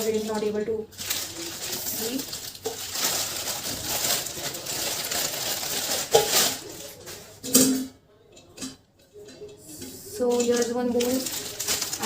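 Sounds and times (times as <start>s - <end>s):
handling and rustling: 0.0s - 7.8s, 9.1s - 12.0s.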